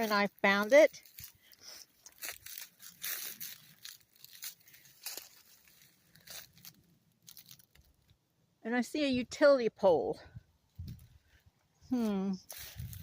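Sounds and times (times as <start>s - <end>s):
footsteps crunching through dry leaves: 0.0s - 8.0s, 12.4s - 13.0s.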